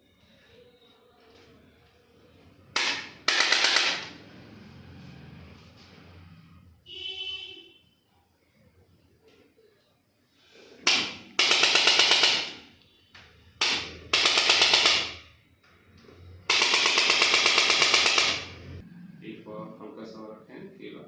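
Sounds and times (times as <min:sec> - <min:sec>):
fast mechanical rattle: 0:16.4 - 0:18.8.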